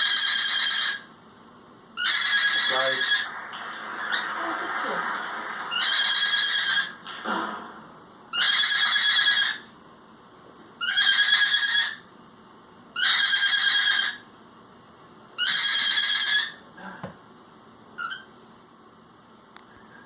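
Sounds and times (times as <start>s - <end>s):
cockatiel calling: 0.0s - 1.1s, 2.0s - 3.3s, 5.7s - 7.0s, 8.3s - 9.6s, 10.8s - 12.0s, 13.0s - 14.2s, 15.4s - 16.6s, 18.0s - 18.3s.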